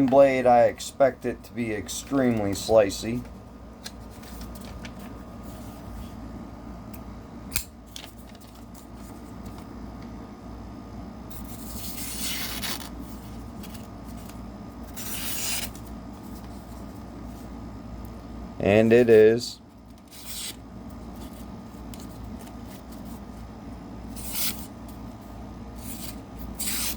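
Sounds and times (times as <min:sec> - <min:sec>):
knife slicing paper: 0:11.4 - 0:12.9, 0:14.8 - 0:15.8, 0:20.1 - 0:20.6, 0:24.1 - 0:24.7, 0:25.8 - 0:26.9.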